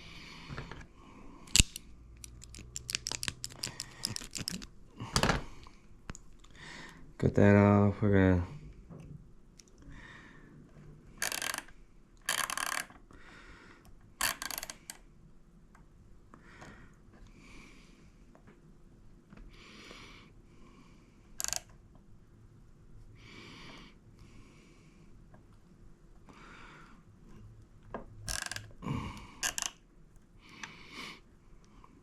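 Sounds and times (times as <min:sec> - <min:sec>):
metal ratchet clicking and clatter: 0:28.3 - 0:28.7.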